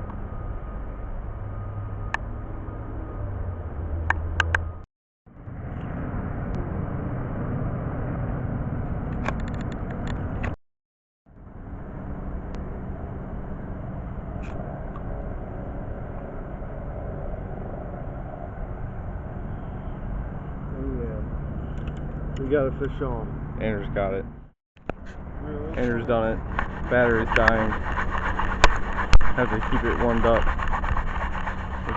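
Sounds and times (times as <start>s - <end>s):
steady outdoor rumbling: 0.0s - 10.6s, 11.3s - 31.9s
quick run of clicks: 26.4s - 31.9s.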